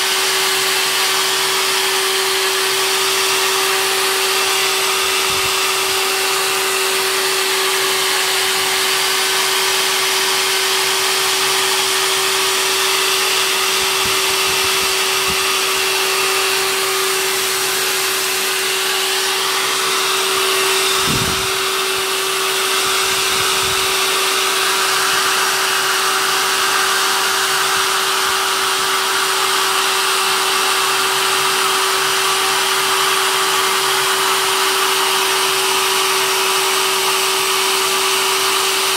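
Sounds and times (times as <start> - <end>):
hair dryer blowing: 0.0 - 38.9
low buffeting: 20.3 - 22.2.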